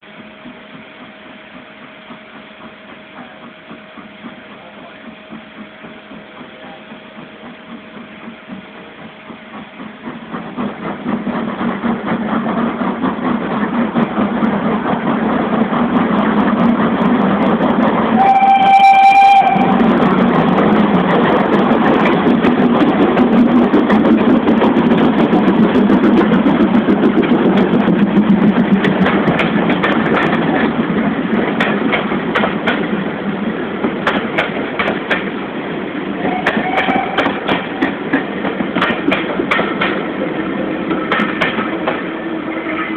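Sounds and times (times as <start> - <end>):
steam locomotive exhaust beats: 0.0 - 42.9
steam whistle blast: 18.1 - 19.9, 36.2 - 37.4.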